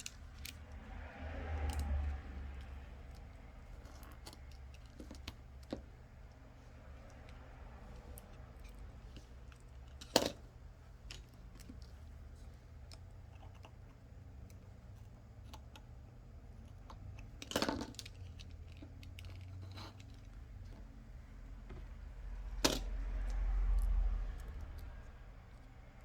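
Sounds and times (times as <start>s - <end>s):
small handling clicks: 2.6s - 12.0s, 16.6s - 20.9s.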